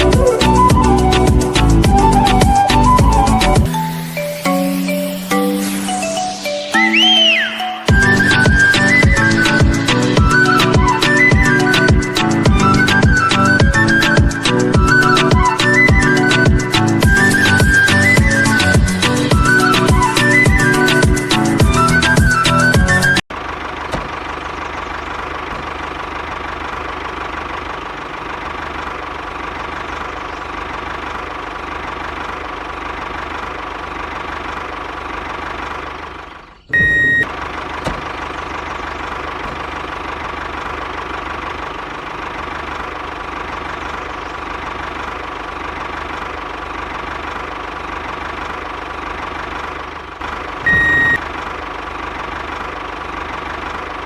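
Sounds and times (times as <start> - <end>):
short high beep: 6.6 - 7.9, 36.7 - 37.3, 50.6 - 51.2.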